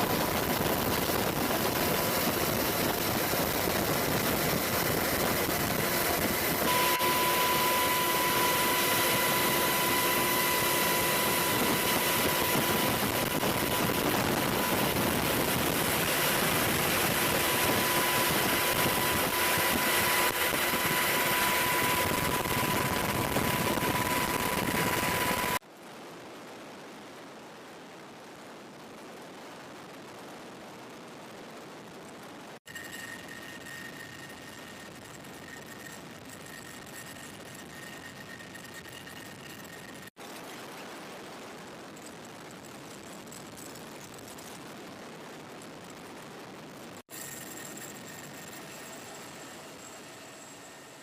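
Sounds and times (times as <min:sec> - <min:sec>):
helicopter engines and rotors: 0:00.0 - 0:25.6, 0:32.7 - 0:40.2, 0:47.1 - 0:51.0
high whine: 0:00.0 - 0:25.6, 0:32.7 - 0:41.0, 0:46.9 - 0:51.0.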